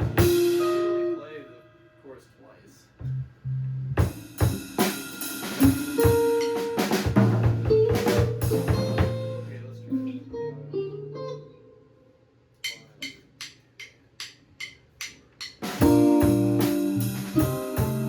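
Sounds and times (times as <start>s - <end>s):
band playing: 0.0s - 1.2s, 4.4s - 10.5s, 15.8s - 18.0s.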